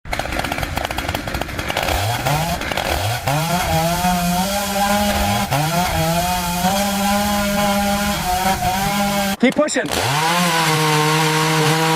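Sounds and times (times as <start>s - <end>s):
chainsaw engine revving: 0.1s - 11.9s.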